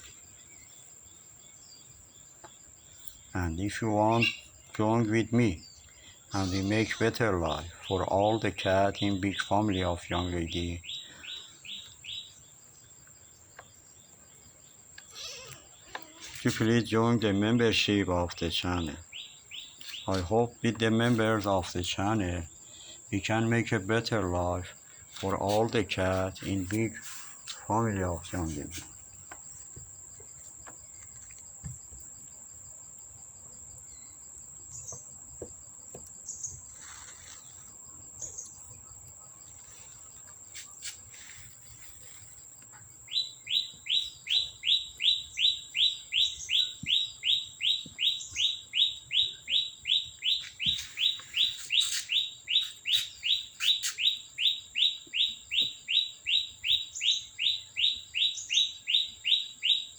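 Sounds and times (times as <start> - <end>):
high-pitched insect trill: 0.0 - 59.9
bird rising chirp: 43.1 - 59.9.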